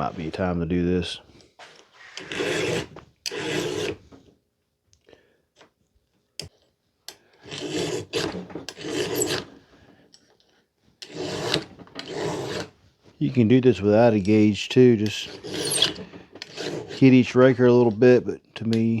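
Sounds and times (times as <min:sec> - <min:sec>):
file rasping on chainsaw chain: 0:02.2 - 0:04.0, 0:07.4 - 0:09.6, 0:11.0 - 0:12.7, 0:15.1 - 0:17.3.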